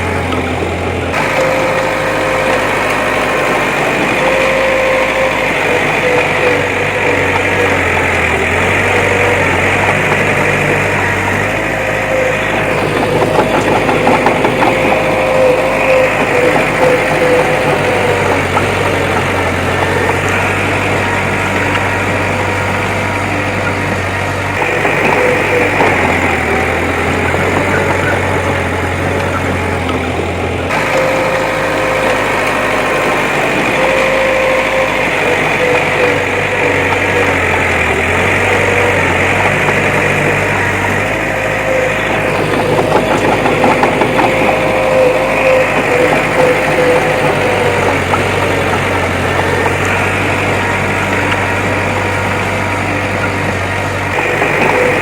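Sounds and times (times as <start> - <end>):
bulldozer diesel engine: 0.0 - 55.0
constant whine: 0.0 - 55.0.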